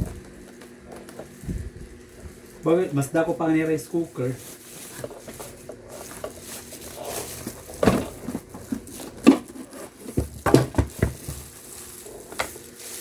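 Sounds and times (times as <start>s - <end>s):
plastic parts knocking: 5.0s - 11.6s.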